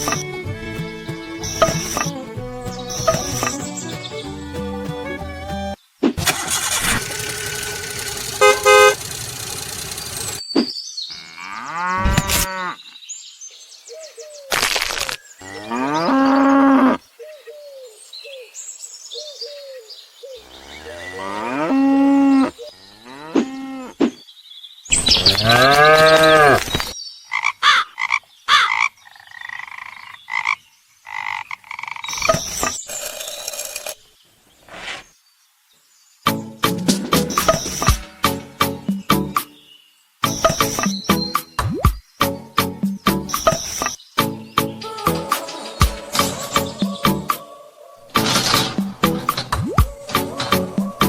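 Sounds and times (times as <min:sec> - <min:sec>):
cow mooing: 0:11.1 - 0:12.8, 0:20.4 - 0:24.0, 0:25.4 - 0:26.6.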